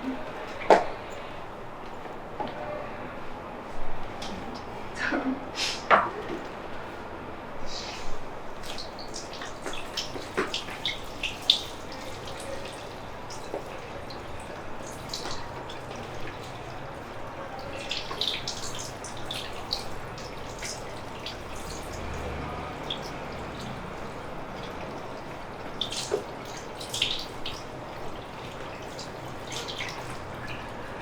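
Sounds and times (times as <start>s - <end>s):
water running: 8.4s - 31.0s
small wet clicks and drips: 8.5s - 31.0s.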